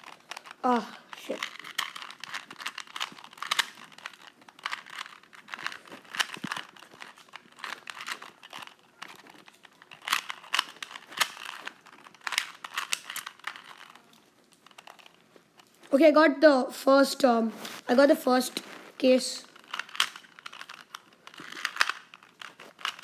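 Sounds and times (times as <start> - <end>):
puzzle cube clicking while turned: 0.0 - 15.9, 19.0 - 23.0.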